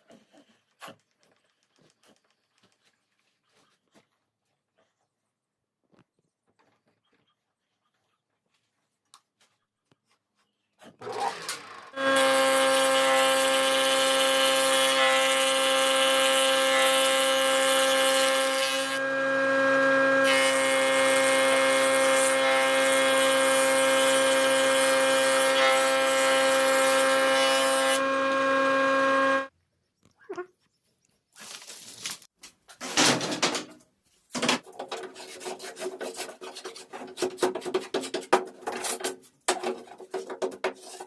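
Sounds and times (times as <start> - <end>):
electric power tool running: 11.0 - 29.5.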